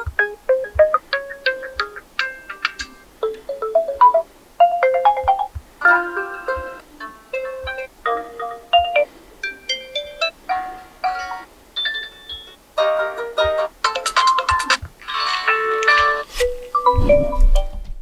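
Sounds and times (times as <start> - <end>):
smartphone alarm chime tunes: 3.5 - 6.8, 7.4 - 12.6.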